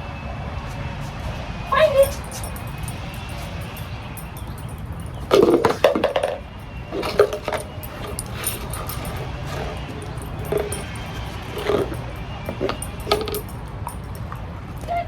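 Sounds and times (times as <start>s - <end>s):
cups knocking and clattering: 4.4s - 14.8s.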